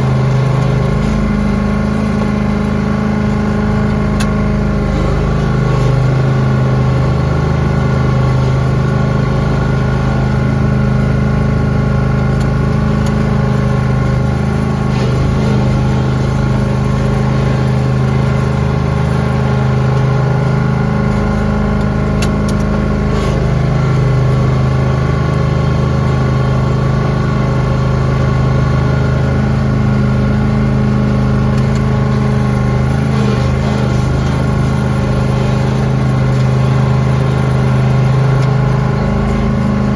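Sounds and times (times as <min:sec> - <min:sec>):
lawn tractor engine running: 0:00.0 - 0:39.9.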